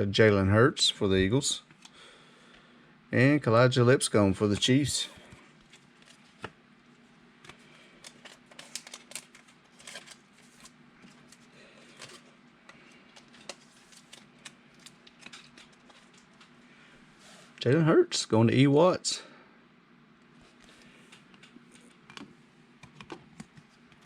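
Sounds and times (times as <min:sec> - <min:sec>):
faint steady hum: 0:00.0 - 0:24.0
cards being handled: 0:04.5 - 0:16.6.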